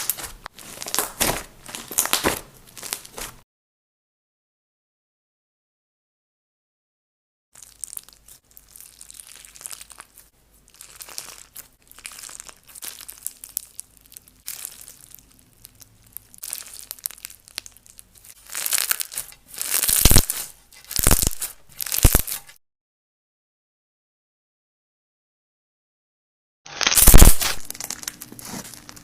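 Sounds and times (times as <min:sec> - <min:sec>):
slime crackling when squeezed: 0:00.0 - 0:03.4, 0:07.6 - 0:22.6, 0:26.7 - 0:29.0.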